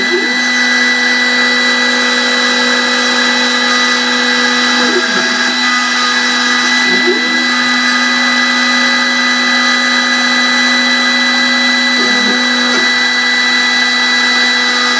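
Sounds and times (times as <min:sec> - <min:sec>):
milling machine whine: 0:00.0 - 0:14.9.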